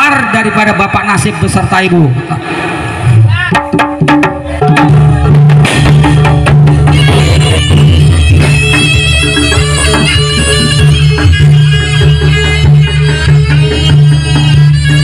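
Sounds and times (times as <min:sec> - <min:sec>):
sharp drum strikes: 0:02.3 - 0:11.4
steady drum beat and bass: 0:03.1 - 0:15.0
higher melody: 0:03.5 - 0:15.0.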